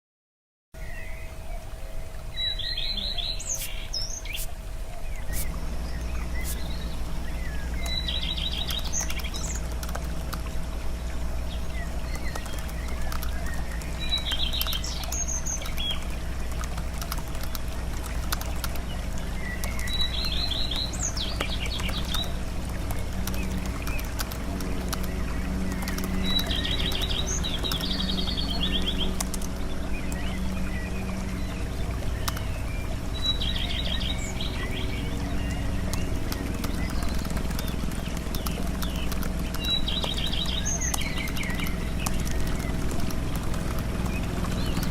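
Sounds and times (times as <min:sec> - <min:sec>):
faint steady hum: 0:00.8 - 0:44.9
steady low rumble: 0:00.8 - 0:44.9
bird trilling: 0:02.4 - 0:09.7
faint clicks: 0:05.3 - 0:44.9.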